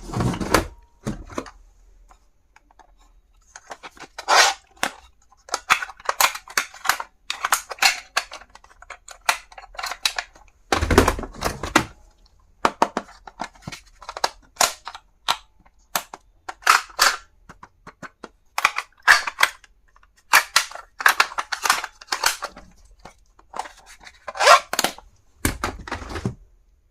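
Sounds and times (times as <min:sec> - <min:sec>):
stationery packaging clicks and snaps: 0:03.6 - 0:10.3, 0:12.6 - 0:25.6.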